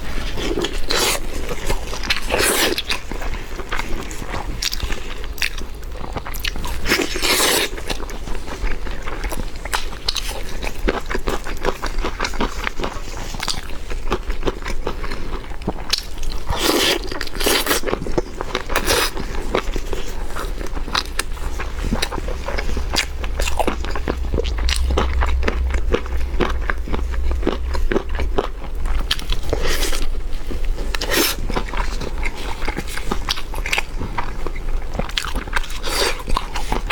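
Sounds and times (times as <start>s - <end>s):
low steady hum: 19.5s - 31.9s.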